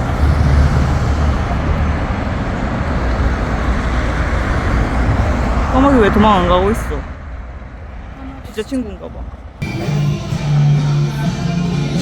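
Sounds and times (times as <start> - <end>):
engine hum: 0.0 - 8.1
tyre and street noise: 0.0 - 12.0.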